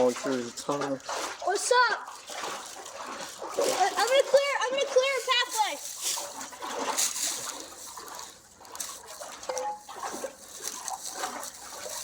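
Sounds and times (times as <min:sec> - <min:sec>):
creek water trickling and splashing: 0:00.0 - 0:12.0.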